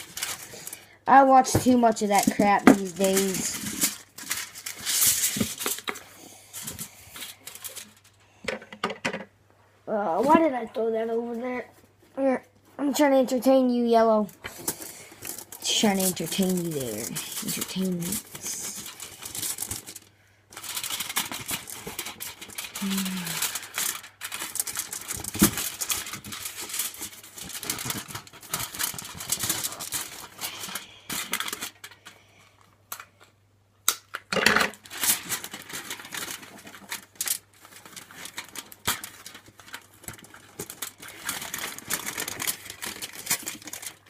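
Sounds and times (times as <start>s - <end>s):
crinkling and rustling materials: 0.0s - 9.1s, 10.0s - 33.4s, 34.0s - 44.0s.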